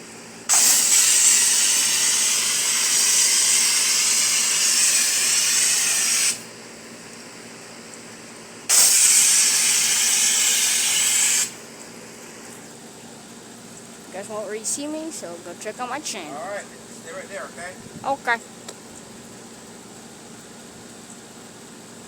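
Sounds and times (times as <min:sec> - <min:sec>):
pressure washer spraying: 0:00.5 - 0:06.6, 0:08.7 - 0:11.7.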